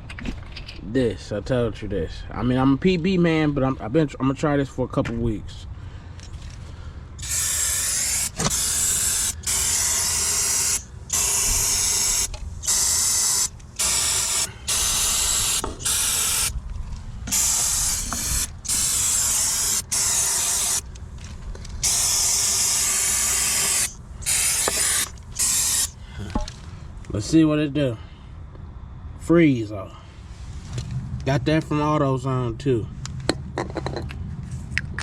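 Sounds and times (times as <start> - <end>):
aerosol can spraying: 7.2 - 16.5, 17.3 - 20.9, 21.8 - 25.9.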